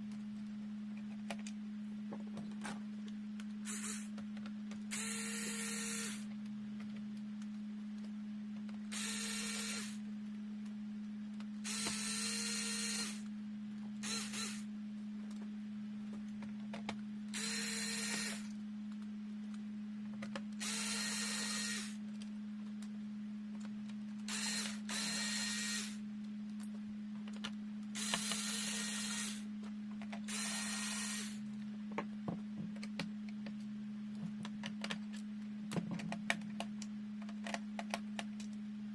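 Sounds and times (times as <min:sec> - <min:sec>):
steady electrical hum: 0:00.0 - 0:38.9
small power tool motor running: 0:03.7 - 0:04.1, 0:04.9 - 0:06.2, 0:08.9 - 0:10.0, 0:11.6 - 0:13.2, 0:14.0 - 0:14.6, 0:17.4 - 0:18.5, 0:20.6 - 0:22.0, 0:24.3 - 0:26.0, 0:28.0 - 0:29.4, 0:30.3 - 0:31.4.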